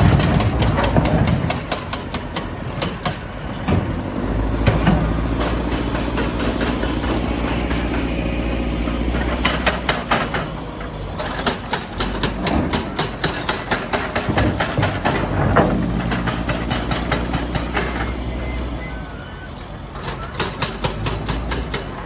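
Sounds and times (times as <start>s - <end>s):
diesel engine running: 3.4s - 11.5s, 15.0s - 20.2s.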